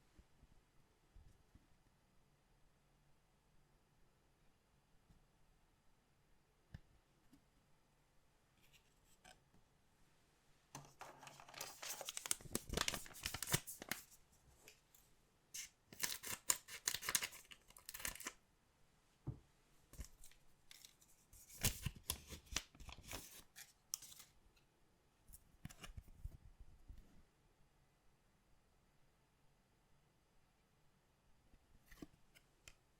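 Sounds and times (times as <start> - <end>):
packaging tearing: 11.5 - 14.1, 16.0 - 18.3.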